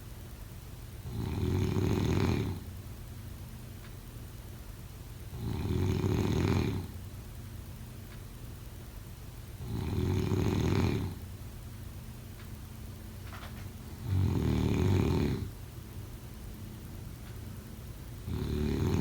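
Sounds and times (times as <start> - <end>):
person snoring: 5.4 - 6.9, 14.0 - 15.5, 18.3 - 19.0.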